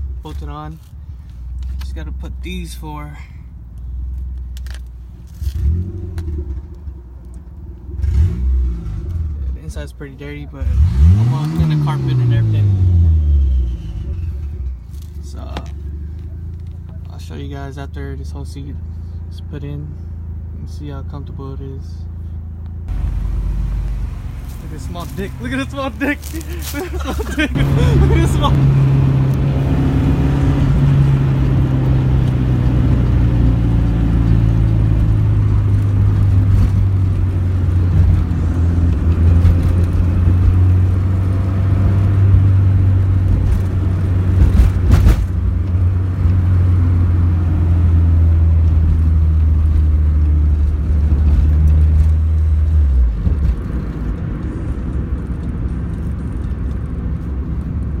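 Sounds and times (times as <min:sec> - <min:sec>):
car engine droning: 0:00.0 - 0:58.0
quiet rumble: 0:22.0 - 0:33.6.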